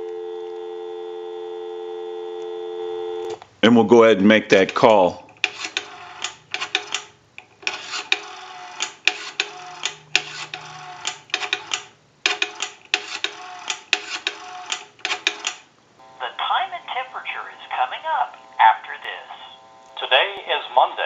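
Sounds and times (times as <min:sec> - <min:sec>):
payphone dial clicks: 0:04.7 - 0:15.7.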